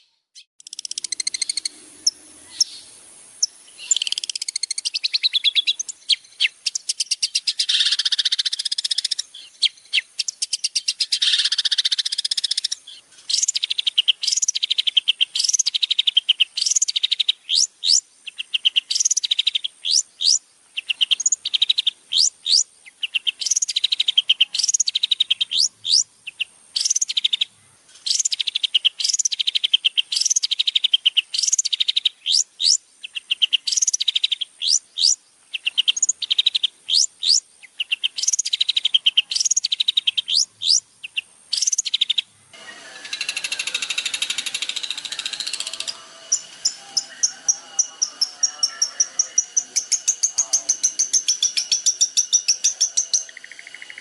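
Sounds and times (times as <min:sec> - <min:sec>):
songbird trills and whistles: 0:00.0 - 0:54.0
thin steady high tone: 0:42.5 - 0:54.0.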